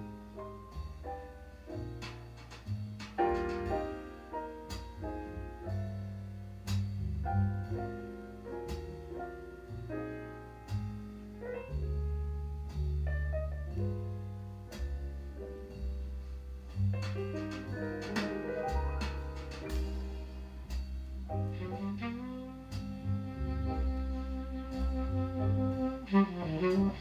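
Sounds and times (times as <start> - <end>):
bass line: 0.0 - 27.0
piano chords: 0.0 - 27.0
light cymbal strikes: 15.6 - 21.4.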